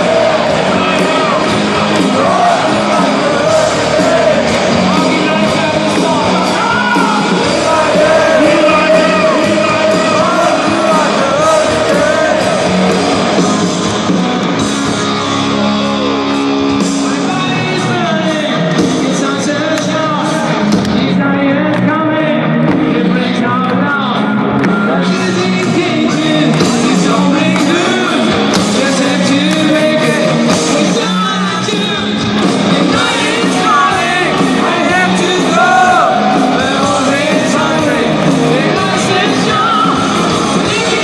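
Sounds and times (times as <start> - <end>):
rock band playing live: 0.0 - 41.0
person singing: 2.2 - 12.7.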